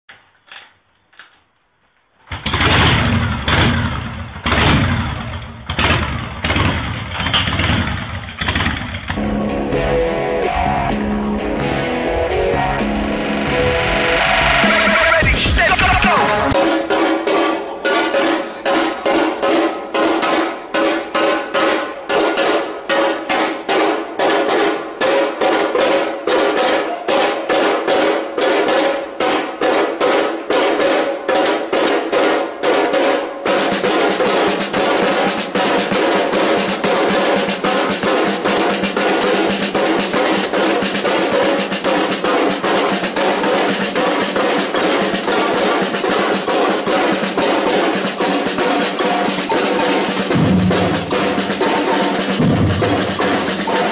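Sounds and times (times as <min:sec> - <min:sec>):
samba percussion band drumming: 0:13.5 - 0:53.9.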